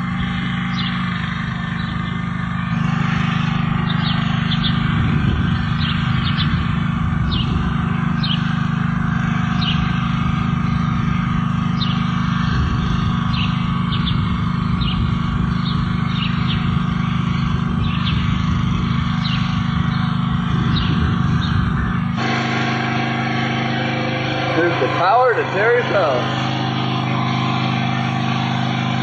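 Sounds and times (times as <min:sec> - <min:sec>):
birds chirping: 0:00.0 - 0:29.0
steady low hum: 0:00.0 - 0:29.0.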